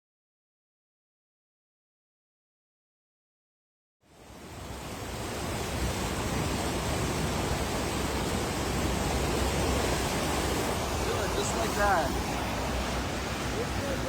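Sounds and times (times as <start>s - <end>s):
floodwater rushing: 4.1s - 14.0s.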